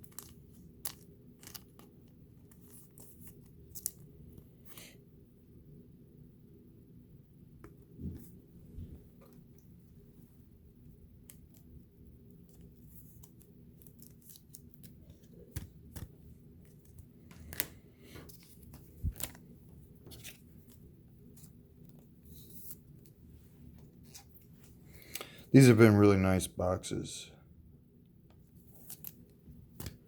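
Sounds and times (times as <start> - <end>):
wrappers crinkling: 0.0 - 1.9.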